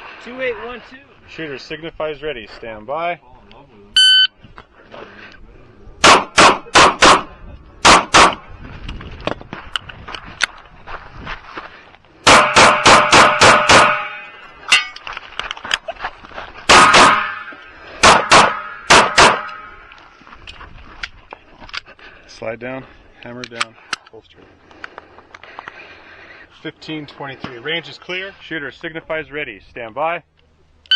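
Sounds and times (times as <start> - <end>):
pistol shots: 6.0 - 8.4, 12.2 - 14.2, 16.7 - 19.7.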